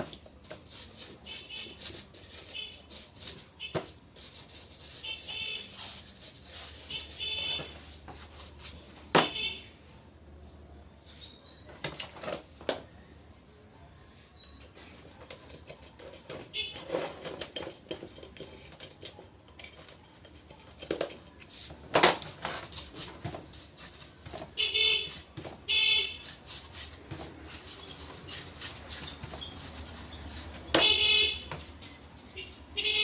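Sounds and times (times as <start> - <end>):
short honk-like pitched sounds: 30.8 - 31.5.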